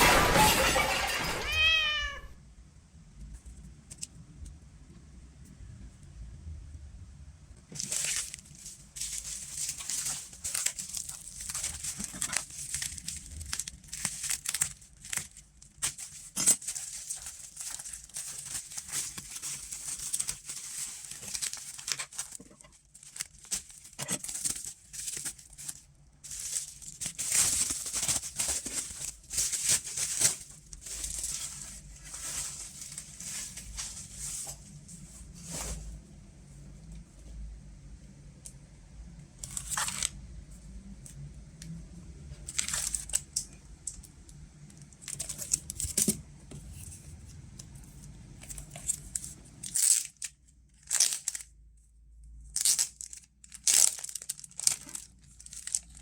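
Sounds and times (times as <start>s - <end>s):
packaging crinkling and rustling: 7.7s - 36.0s, 39.4s - 40.2s, 42.4s - 44.0s, 44.9s - 51.5s, 52.5s - 56.0s.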